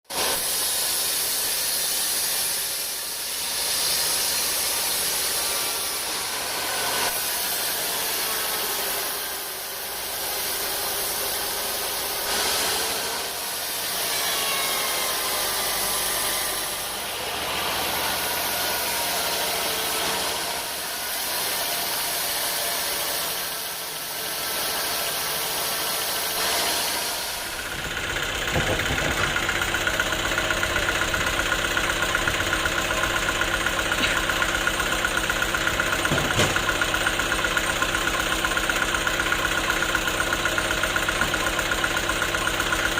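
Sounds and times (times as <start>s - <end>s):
saw hiss: 0.1s - 42.9s
low engine-like drone: 26.9s - 37.4s.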